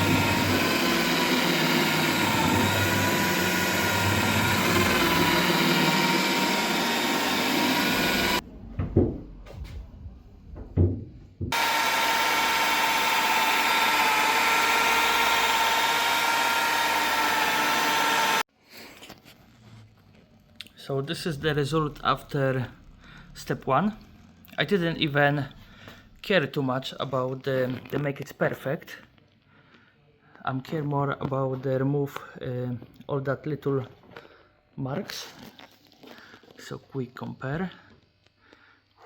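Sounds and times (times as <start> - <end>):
machine polisher whining: 0.0 - 8.4, 11.5 - 18.5
knocks: 10.5 - 11.6.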